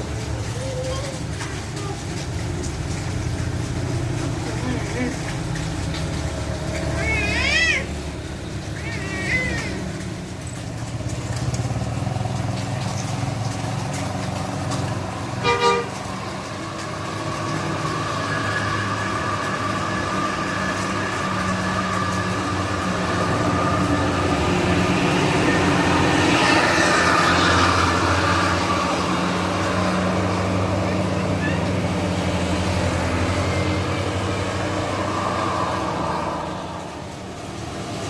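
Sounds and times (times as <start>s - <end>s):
diesel bus engine climbing: 0.0s - 38.0s
bus horn double toot: 15.4s - 16.0s.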